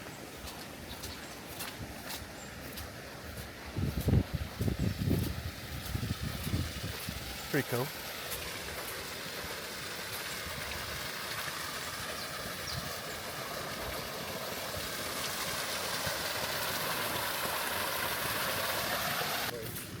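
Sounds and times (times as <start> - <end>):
running water: 0.0 - 20.0.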